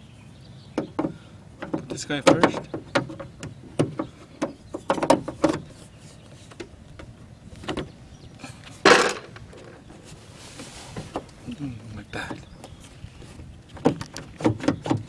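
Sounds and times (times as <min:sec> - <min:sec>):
clicks and knocks of parts: 0:00.8 - 0:09.8, 0:13.7 - 0:15.0
rasping scrape: 0:04.8 - 0:06.6, 0:09.6 - 0:11.6.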